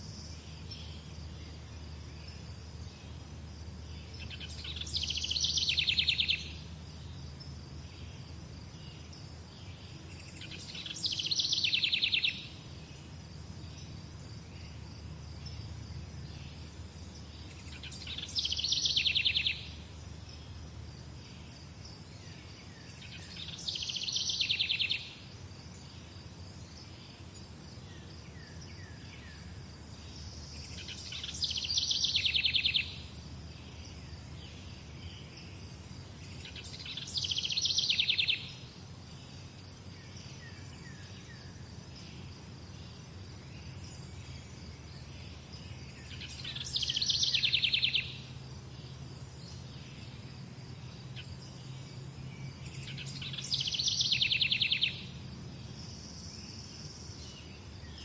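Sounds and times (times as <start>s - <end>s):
faint bird chirps: 0.0s - 13.0s, 13.6s - 26.0s, 26.6s - 58.0s
high insect drone: 0.0s - 58.0s
bird rapid trilled song: 4.0s - 6.7s, 10.1s - 12.6s, 17.2s - 20.0s, 22.9s - 25.2s, 30.4s - 34.3s, 36.2s - 38.7s, 43.6s - 48.3s, 51.1s - 55.2s.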